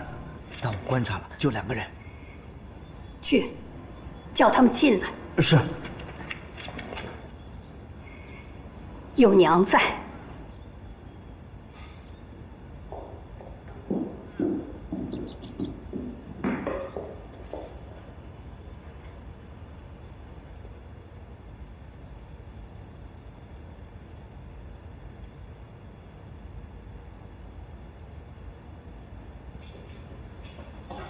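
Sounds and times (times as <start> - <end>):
small birds chirping: 0.0 - 31.0
steady background hiss: 0.0 - 31.0.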